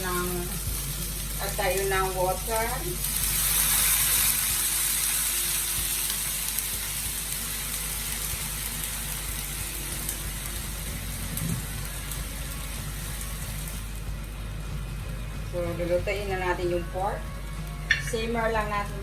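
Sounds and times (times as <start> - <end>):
pork sizzling in a pan: 0.0 - 19.0.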